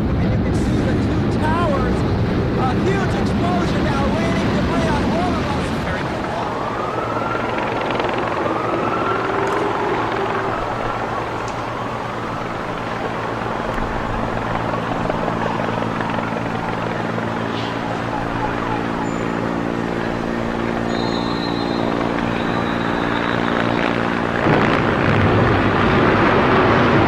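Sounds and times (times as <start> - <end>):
mechanical drone: 0.0 - 27.0
loud rushing noise: 21.8 - 27.0.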